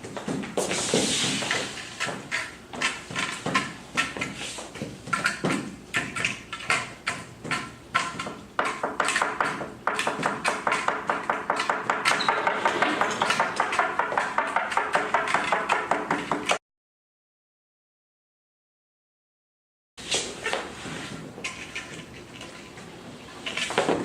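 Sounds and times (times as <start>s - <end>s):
irregular taps and knocks: 1.5s - 16.6s.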